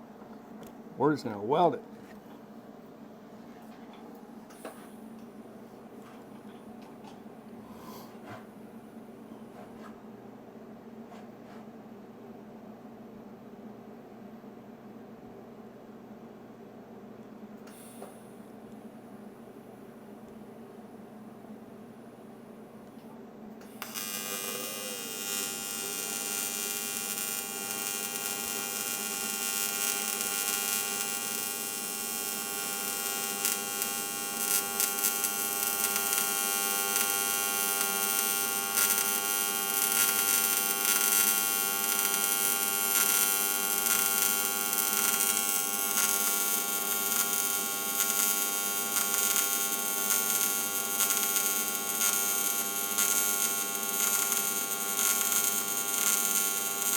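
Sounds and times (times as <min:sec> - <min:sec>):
welder electric hum and buzz: 0:17.7 - 0:56.9
welding arc striking: 0:23.6 - 0:56.9.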